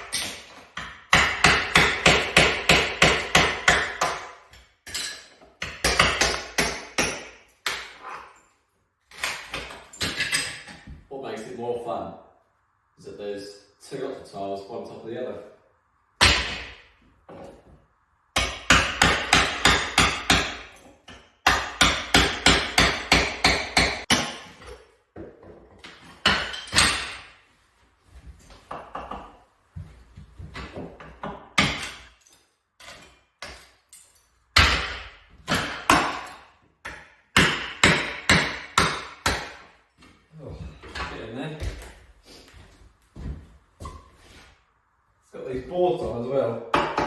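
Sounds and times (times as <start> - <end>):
hammer chipping off tiles: 0.0 - 8.1, 9.1 - 10.8, 18.4 - 27.3, 30.5 - 33.9, 34.6 - 39.7.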